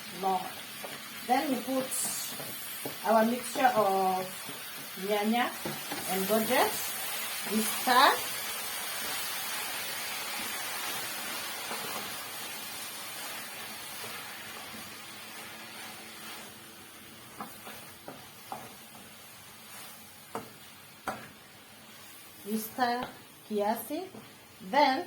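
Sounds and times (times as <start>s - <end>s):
food sizzling in a pan: 0.0s - 25.0s.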